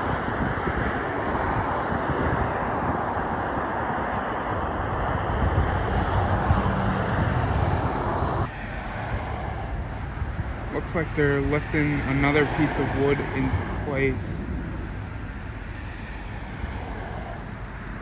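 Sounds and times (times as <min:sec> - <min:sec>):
engine rumble: 0:00.0 - 0:18.0
low hum: 0:00.0 - 0:18.0.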